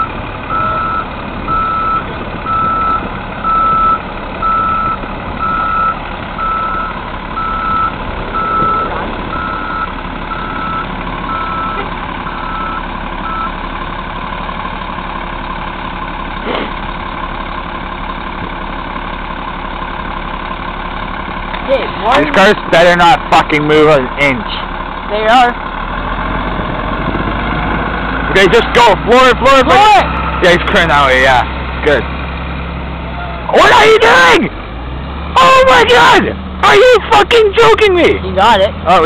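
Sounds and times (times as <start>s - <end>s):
reversing alarm beeping: 0.0s - 13.6s
heavy vehicle engine running: 0.0s - 39.0s.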